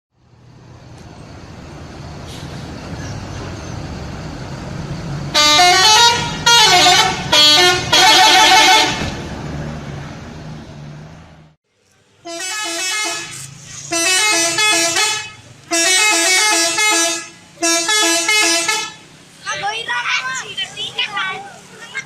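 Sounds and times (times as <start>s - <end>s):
bus engine running: 0.1s - 22.0s
multi-tone bus horn jingle: 5.3s - 9.3s, 12.2s - 19.2s.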